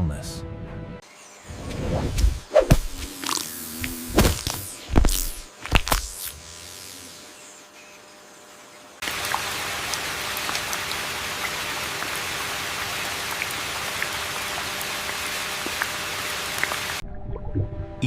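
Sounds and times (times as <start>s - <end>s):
steady rain hiss: 9.0s - 17.0s.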